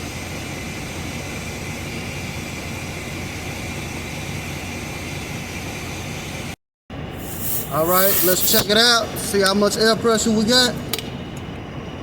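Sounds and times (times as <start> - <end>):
compressed air hissing into tire: 7.2 - 8.8.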